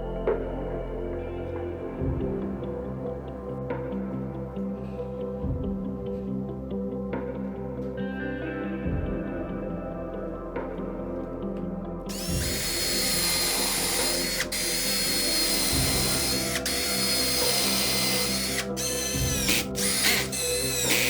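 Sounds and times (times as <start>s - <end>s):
power tool motor whining: 12.1s - 21.0s.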